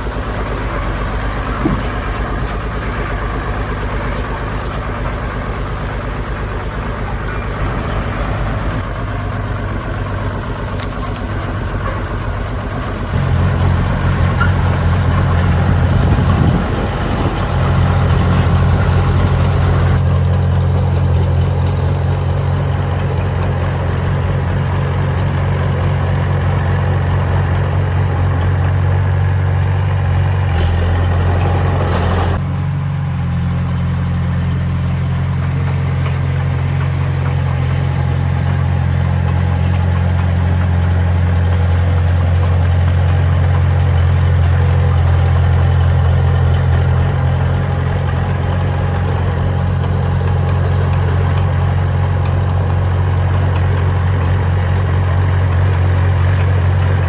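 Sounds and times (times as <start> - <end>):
heavy diesel engine droning: 0.0 - 57.0.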